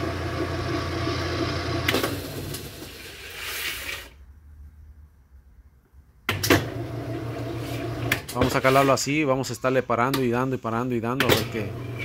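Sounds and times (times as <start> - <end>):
washer motor humming: 0.0 - 2.8, 6.6 - 8.3, 11.2 - 12.0.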